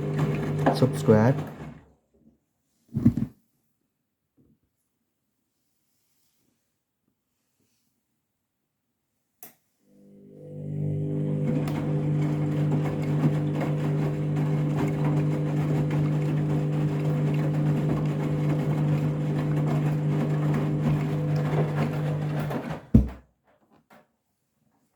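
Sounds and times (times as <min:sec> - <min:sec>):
washing machine running: 0:00.0 - 0:01.9, 0:09.9 - 0:23.2.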